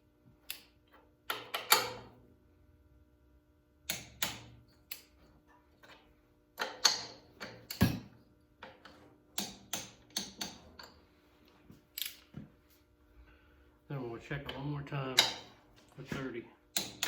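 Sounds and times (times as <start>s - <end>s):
torque wrench clicking: 16.8s - 17.0s.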